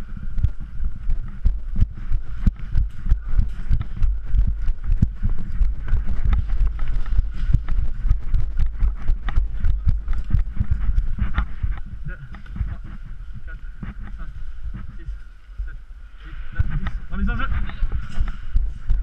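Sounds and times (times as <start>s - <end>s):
heavy low thumps: 0.0s - 15.9s
footsteps: 0.0s - 19.0s.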